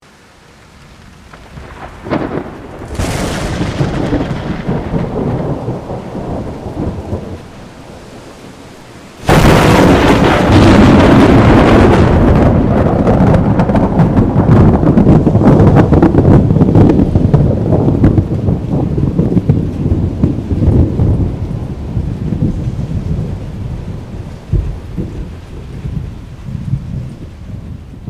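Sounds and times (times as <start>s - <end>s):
thunder rumbling: 0.4s - 28.0s
loud thunderclap: 1.3s - 28.0s.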